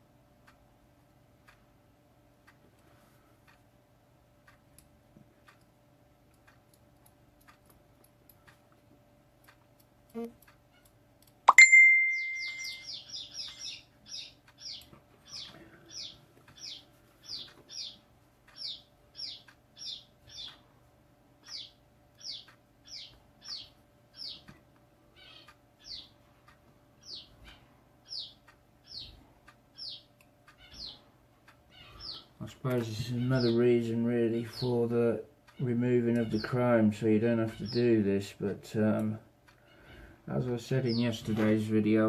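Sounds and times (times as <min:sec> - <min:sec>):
small bird chirping: 0:10.1 - 0:20.7, 0:21.4 - 0:26.3, 0:27.0 - 0:34.8, 0:35.4 - 0:36.8, 0:37.4 - 0:38.0, 0:39.6 - 0:41.6.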